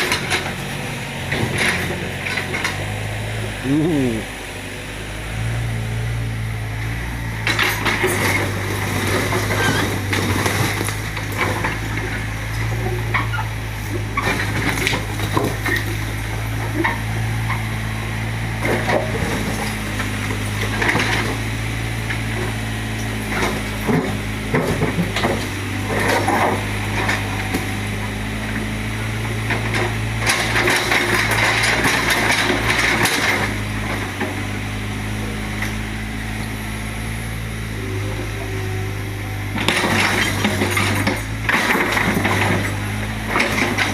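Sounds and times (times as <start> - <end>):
excavator diesel engine running: 0.0 - 43.9
bricks and rubble clattering: 29.5 - 34.4, 39.6 - 43.9.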